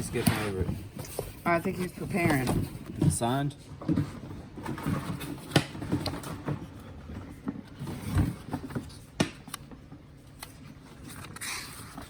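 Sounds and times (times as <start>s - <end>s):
objects knocking and clicking: 2.1s - 10.1s.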